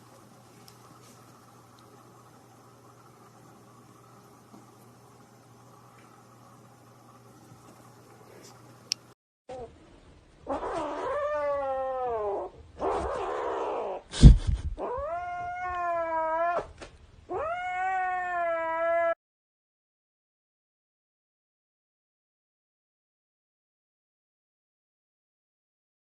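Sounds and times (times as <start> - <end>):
cat yowling: 10.5 - 14.1, 14.8 - 19.2.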